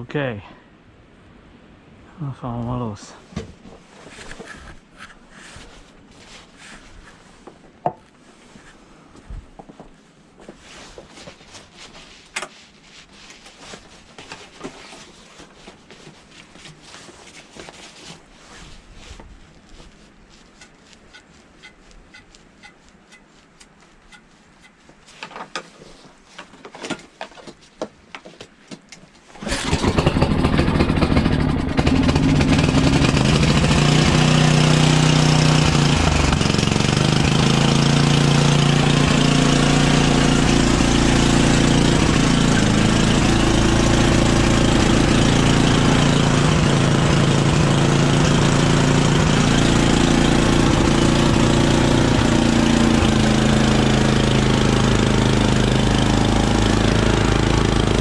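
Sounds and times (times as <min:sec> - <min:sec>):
snowblower engine running: 0:29.4 - 0:58.0.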